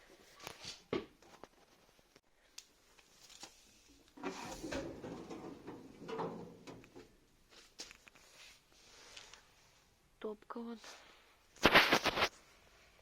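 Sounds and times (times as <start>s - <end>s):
scraping and rustling: 4.1s - 9.2s.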